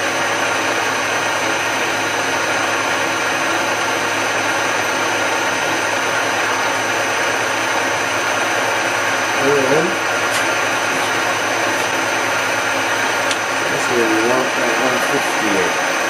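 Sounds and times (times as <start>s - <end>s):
milling machine cutting metal: 0.0s - 16.0s.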